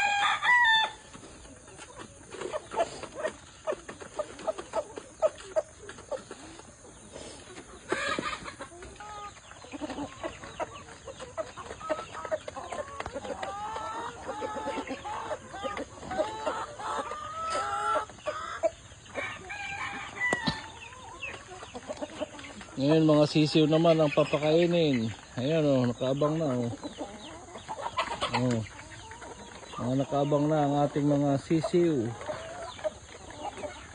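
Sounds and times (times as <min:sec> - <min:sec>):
chickens clucking and calling: 0:00.0 - 0:33.9.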